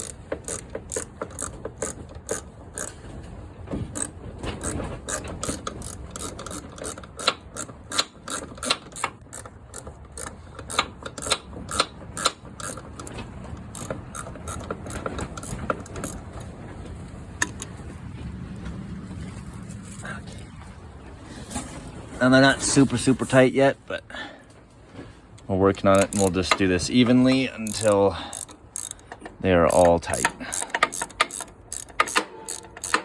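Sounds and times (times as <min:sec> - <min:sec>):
ratchet wrench clicking: 0:00.0 - 0:03.0, 0:03.9 - 0:16.2, 0:25.9 - 0:26.6, 0:27.2 - 0:33.0.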